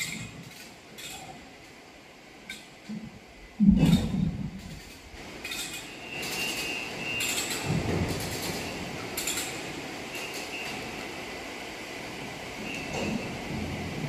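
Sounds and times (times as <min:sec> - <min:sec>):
high metallic squealing: 0:05.5 - 0:07.7.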